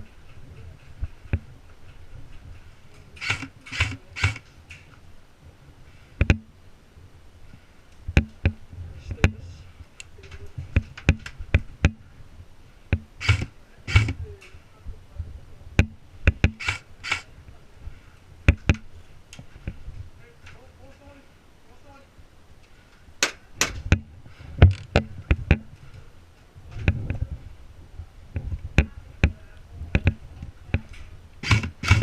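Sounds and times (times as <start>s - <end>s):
rustling bursts: 0.0s - 6.3s, 7.3s - 21.9s, 29.8s - 32.0s.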